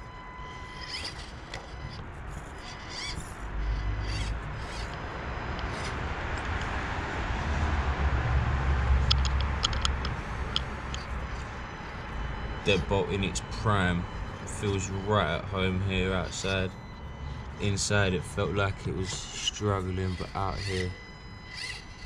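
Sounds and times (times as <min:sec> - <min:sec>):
small electric motor whining: 0:00.0 - 0:07.6, 0:09.0 - 0:22.0
birds calling: 0:10.2 - 0:22.0.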